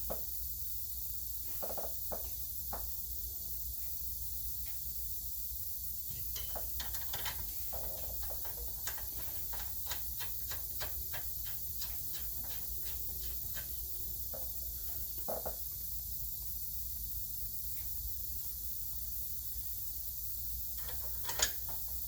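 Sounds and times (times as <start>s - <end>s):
steady hiss: 0.0s - 22.0s
hand ratchet clicking: 6.3s - 14.5s.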